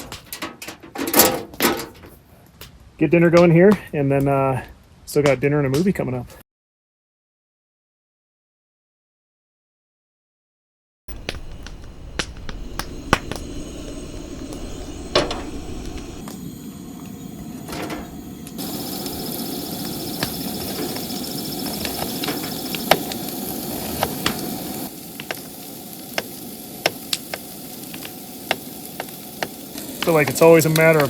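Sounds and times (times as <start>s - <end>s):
food sizzling in a pan: 11.1s - 31.0s.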